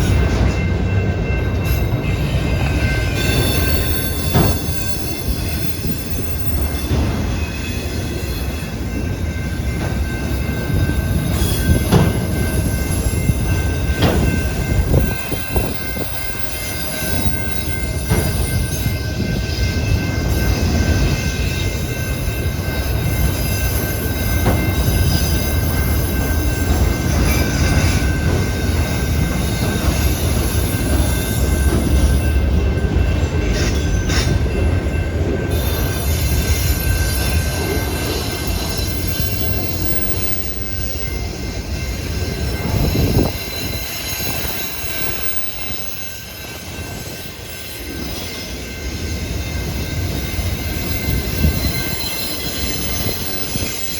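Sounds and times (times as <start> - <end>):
rail joint clicks: 0.0 - 53.9
train wheels rumbling on rail: 0.0 - 53.9
high wheel squeal: 41.9 - 53.9.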